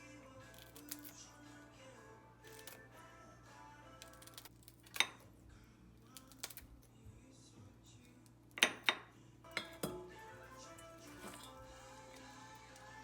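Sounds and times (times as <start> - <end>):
kitchenware clinking and knocking: 4.8 - 5.4, 8.6 - 11.7.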